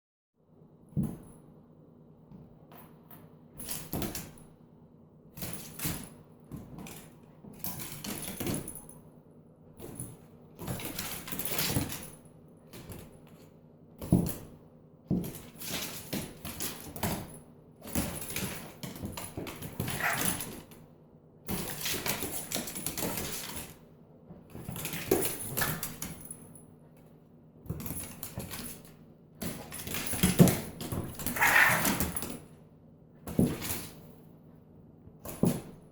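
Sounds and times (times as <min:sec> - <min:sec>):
dog scuffling: 0:29.5 - 0:32.4.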